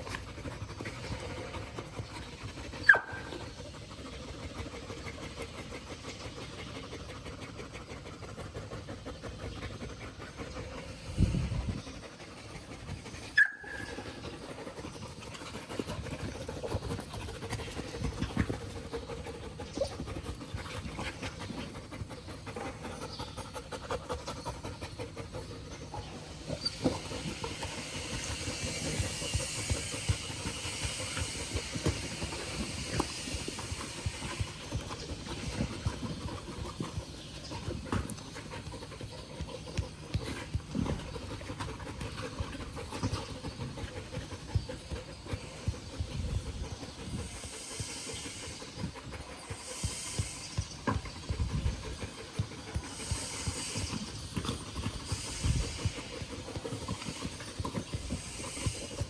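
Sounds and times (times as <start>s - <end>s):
dog panting: 0.0s - 59.0s.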